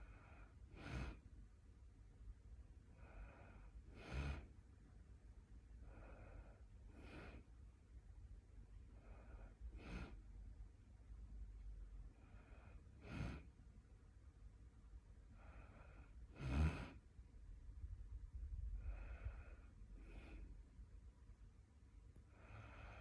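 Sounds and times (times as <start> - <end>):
person snoring: 16.3 - 17.0.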